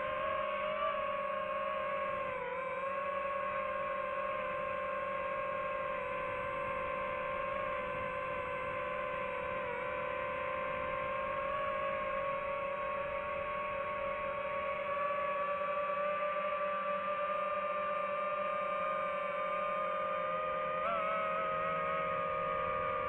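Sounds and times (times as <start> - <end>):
drone motors whining: 0.0 - 23.0.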